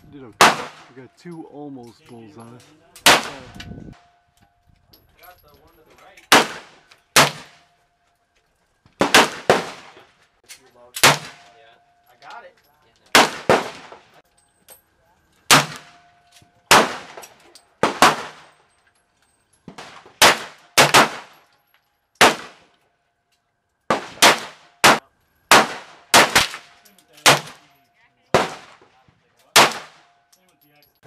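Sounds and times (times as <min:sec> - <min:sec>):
gunshots with ringing echo: 0:00.3 - 0:01.0, 0:03.0 - 0:04.2, 0:06.3 - 0:07.7, 0:09.0 - 0:10.0, 0:11.0 - 0:11.6, 0:13.1 - 0:14.0, 0:15.5 - 0:18.5, 0:19.7 - 0:21.4, 0:22.2 - 0:22.7, 0:23.9 - 0:28.8, 0:29.6 - 0:30.3.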